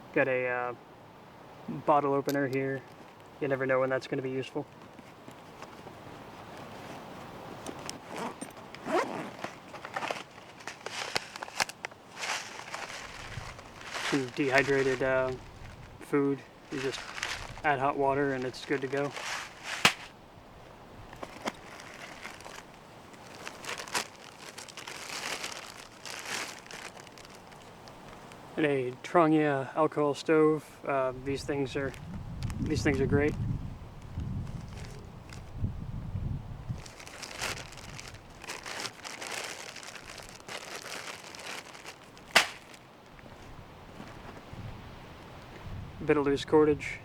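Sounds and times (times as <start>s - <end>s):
packaging crinkling and rustling: 7.7s - 20.1s, 21.1s - 28.5s, 34.1s - 35.5s, 36.7s - 43.5s.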